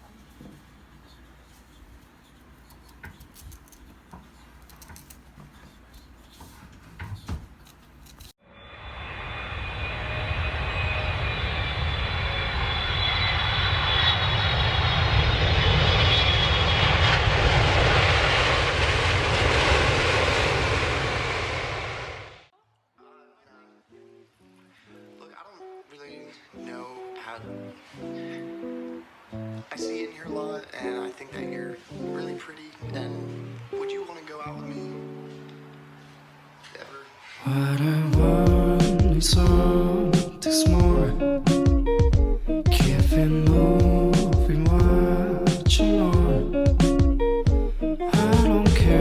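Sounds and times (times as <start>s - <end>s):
jet engines roaring with high whine: 8.6s - 22.5s.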